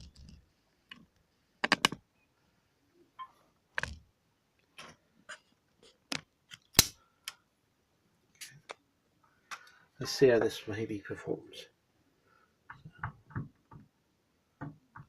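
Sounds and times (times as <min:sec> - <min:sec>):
handling clicks and knocks: 0:00.0 - 0:02.0.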